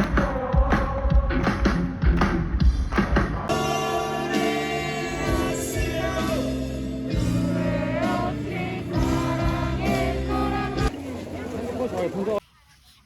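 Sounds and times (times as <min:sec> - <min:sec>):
person singing over chords: 0:03.5 - 0:10.9.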